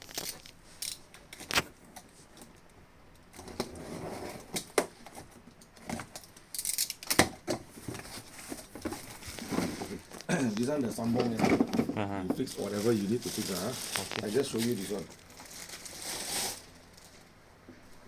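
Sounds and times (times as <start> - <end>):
soft rustle: 12.4 - 18.0.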